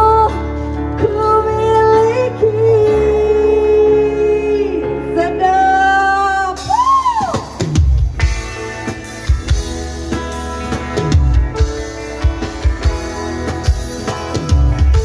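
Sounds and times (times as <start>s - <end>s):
woman singing: 0.0s - 7.4s
guitar: 0.0s - 15.0s
keyboard: 0.0s - 15.0s
live band playing: 0.0s - 15.0s.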